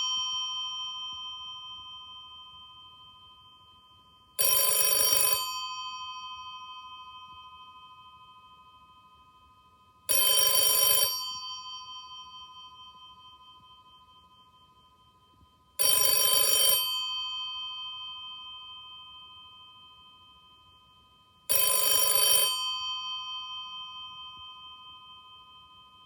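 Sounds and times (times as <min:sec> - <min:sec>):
telephone bell ringing: 0:00.0 - 0:00.2, 0:04.4 - 0:07.4, 0:10.1 - 0:13.2, 0:15.8 - 0:18.0, 0:21.5 - 0:24.6.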